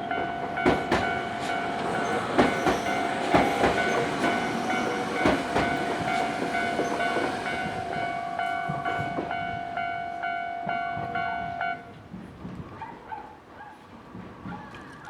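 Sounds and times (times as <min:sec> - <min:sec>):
level crossing warning bell: 0:00.0 - 0:12.0
train wheels clacking on rails: 0:00.0 - 0:13.0.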